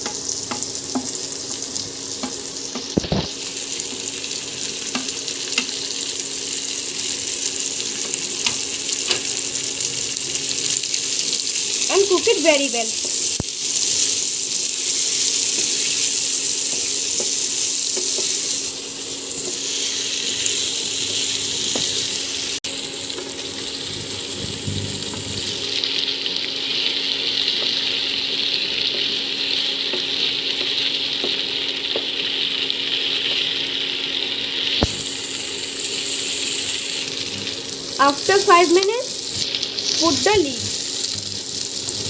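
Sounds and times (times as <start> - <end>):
food sizzling in a pan: 0.0 - 42.0.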